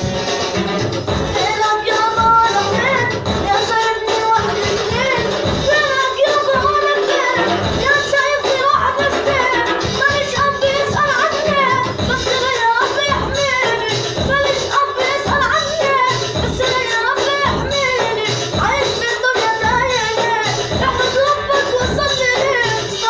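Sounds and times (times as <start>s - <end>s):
music with steady drum beat: 0.0s - 23.0s.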